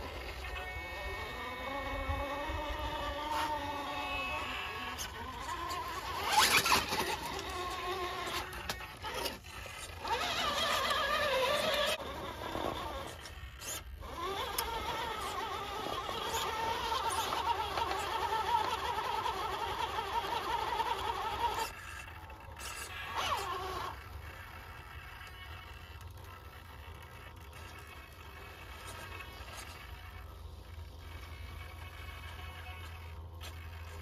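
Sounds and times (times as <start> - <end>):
electric motor whining: 0.0 - 34.0.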